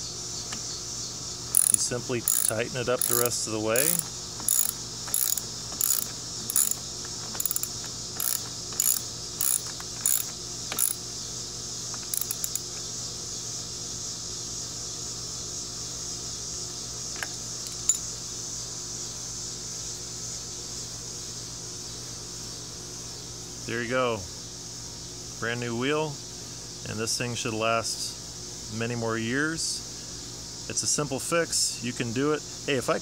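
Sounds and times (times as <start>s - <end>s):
ratchet wrench clicking: 1.5s - 11.0s, 11.9s - 12.8s.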